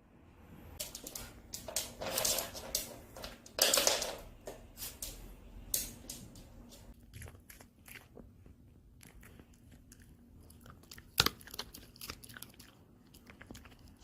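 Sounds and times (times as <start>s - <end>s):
dog gnawing on a chew: 6.9s - 14.0s.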